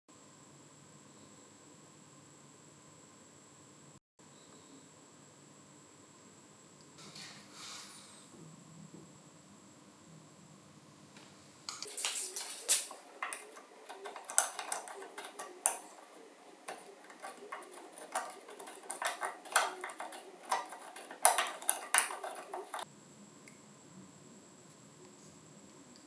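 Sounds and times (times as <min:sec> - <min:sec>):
metal tool parts clinking: 0:11.8 - 0:22.8.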